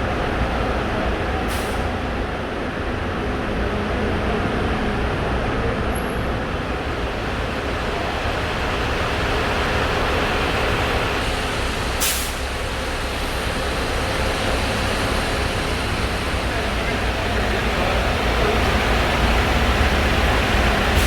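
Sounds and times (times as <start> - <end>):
vehicle engine and road noise: 0.0 - 21.0
short sharp hiss: 12.0 - 12.5.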